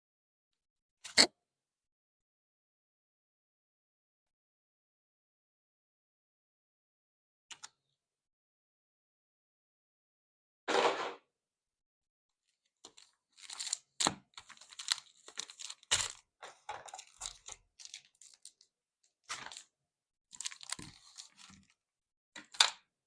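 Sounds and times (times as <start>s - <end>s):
crinkling plastic packaging: 12.8s - 18.6s, 19.2s - 19.6s, 20.3s - 21.7s
packaging tearing: 12.9s - 16.2s, 16.9s - 18.6s, 20.3s - 21.5s.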